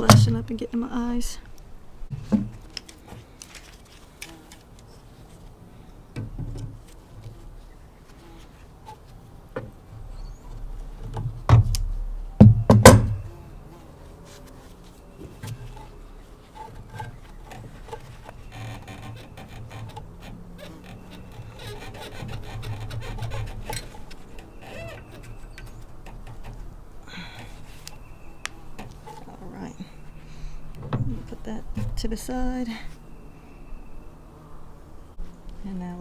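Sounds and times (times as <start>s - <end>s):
loud thumps: 0.0s - 0.6s, 11.2s - 13.4s, 30.5s - 32.2s
small clicks and knocks: 1.4s - 5.5s, 15.2s - 29.4s.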